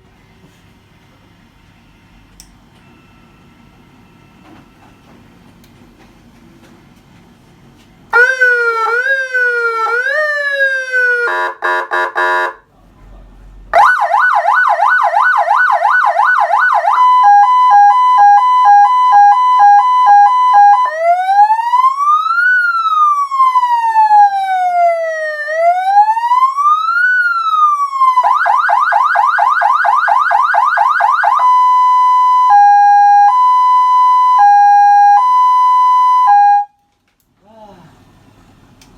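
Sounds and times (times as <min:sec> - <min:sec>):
electronic vehicle siren: 0:08.1 - 0:12.6, 0:13.7 - 0:36.8.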